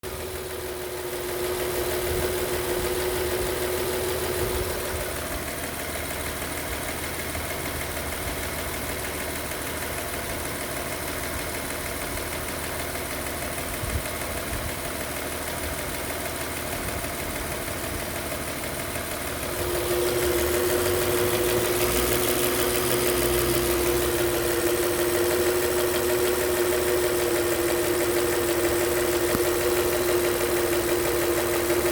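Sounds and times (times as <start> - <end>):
car engine humming: 0.0 - 6.8, 18.6 - 31.9.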